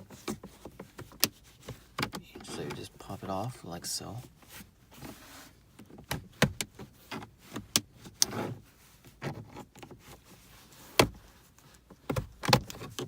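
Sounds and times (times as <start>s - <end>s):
quiet rustling: 0.0s - 6.0s.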